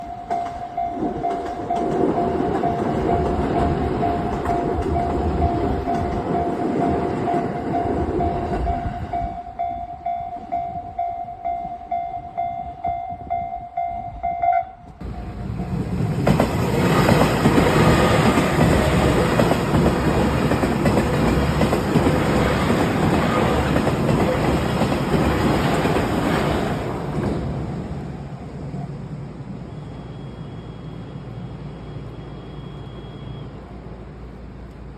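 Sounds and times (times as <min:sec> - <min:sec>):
level crossing alarm ringing: 0:00.0 - 0:14.9
train wheel and track noise: 0:00.0 - 0:34.9
train wheels clattering: 0:15.7 - 0:27.6.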